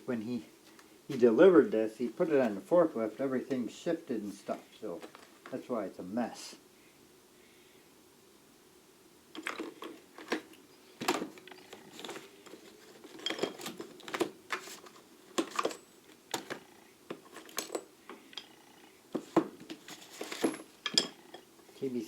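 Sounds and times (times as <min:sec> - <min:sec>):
metal tools clinking in drawer: 0:09.4 - 0:10.5, 0:11.4 - 0:16.6, 0:17.2 - 0:18.6, 0:19.8 - 0:21.5.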